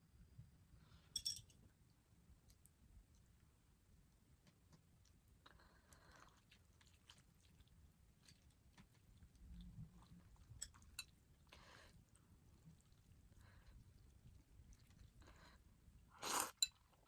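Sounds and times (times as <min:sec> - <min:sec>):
chewing and wet mouth noises: 0:05.0 - 0:15.6.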